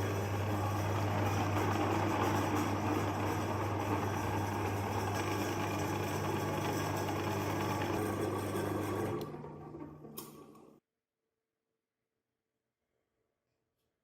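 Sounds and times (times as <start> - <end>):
meat grinder motor humming: 0.0 - 10.5.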